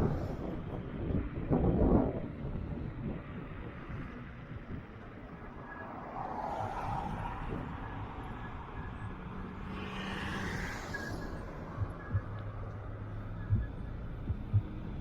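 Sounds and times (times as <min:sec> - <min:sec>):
wind buffeting microphone: 0:00.0 - 0:09.3.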